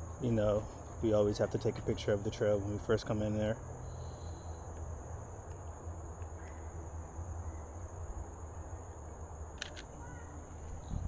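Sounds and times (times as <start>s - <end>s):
insects droning: 0.0s - 11.0s
camera shutter click: 9.5s - 10.0s
wind rumble on microphone: 10.6s - 11.0s.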